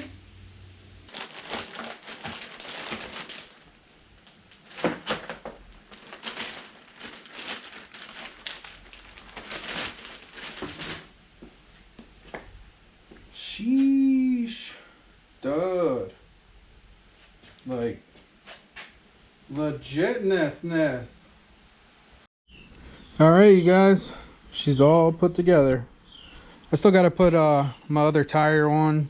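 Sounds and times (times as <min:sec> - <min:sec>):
crinkling handling noise: 0:01.1 - 0:12.6.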